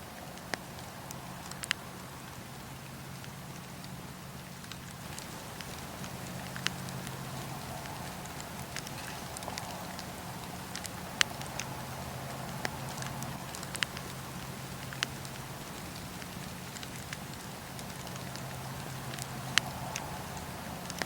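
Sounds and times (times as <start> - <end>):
fire crackling and popping: 0.0 - 21.0.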